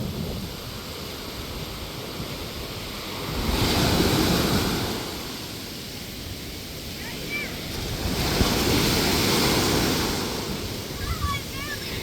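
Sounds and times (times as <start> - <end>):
wind on microphone: 0.0 - 6.8, 7.6 - 12.0
wave breaking on beach: 0.0 - 12.0.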